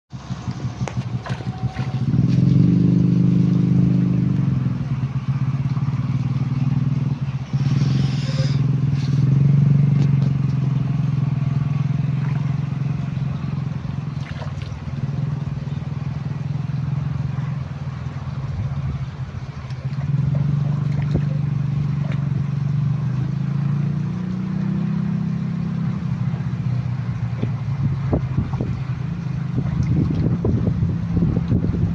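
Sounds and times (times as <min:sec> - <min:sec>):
small engine running: 0:00.1 - 0:04.0, 0:05.4 - 0:24.5.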